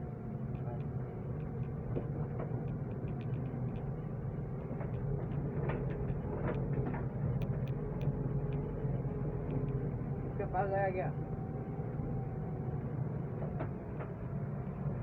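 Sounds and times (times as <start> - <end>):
faint ticks: 0.0 - 10.3.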